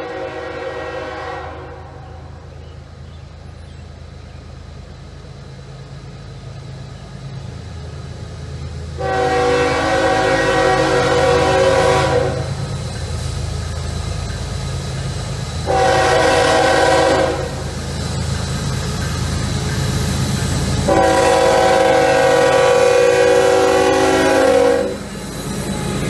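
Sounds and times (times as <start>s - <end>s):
train air horn blasts: 0.0s - 2.3s, 9.0s - 12.6s, 15.6s - 17.7s, 20.8s - 25.1s
low rumble of passing train: 0.0s - 26.0s.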